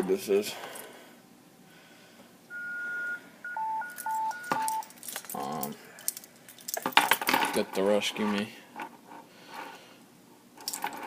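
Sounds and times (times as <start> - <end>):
electronic alert tones: 2.5 - 4.8.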